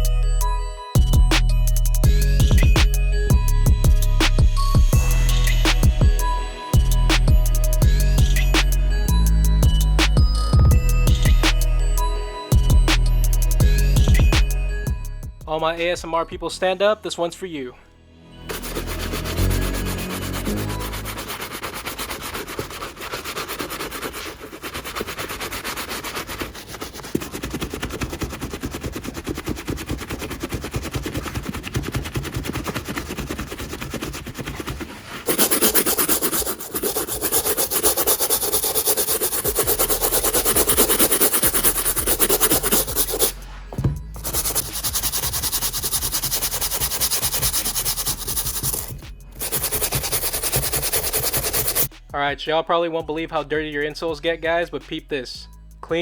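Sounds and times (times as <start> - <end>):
brush scrubbing a sneaker: 18.5 - 43.5, 44.2 - 51.9.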